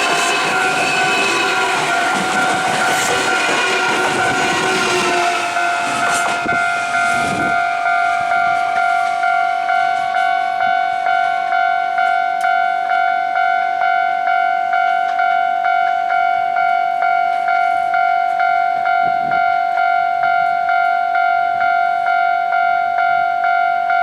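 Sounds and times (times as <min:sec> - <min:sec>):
train rumbling and rattling: 0:00.0 - 0:12.2
level crossing warning bell: 0:00.0 - 0:24.0.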